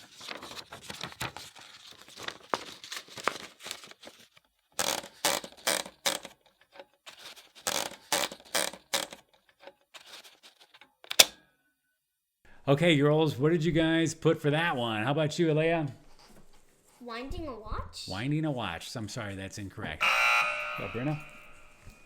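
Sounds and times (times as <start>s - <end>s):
typewriter typing: 4.8s - 6.4s, 7.6s - 9.2s.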